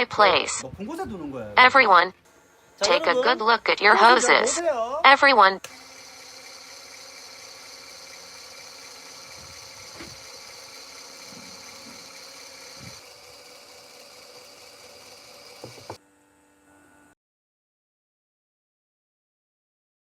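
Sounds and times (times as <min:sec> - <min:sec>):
electric suction pump whining: 0:00.0 - 0:00.6, 0:02.8 - 0:16.0.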